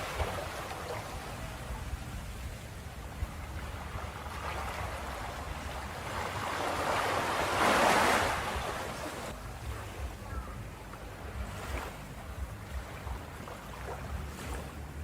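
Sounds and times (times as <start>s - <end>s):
ocean surf washing onto beach: 0.0s - 15.0s
steady low rumble: 8.4s - 15.0s.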